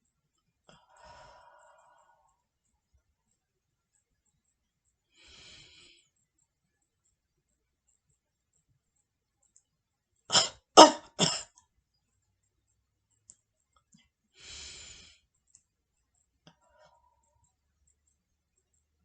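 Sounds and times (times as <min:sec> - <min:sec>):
soft short breath: 0:00.7 - 0:02.4
forceful coughs: 0:10.3 - 0:11.6.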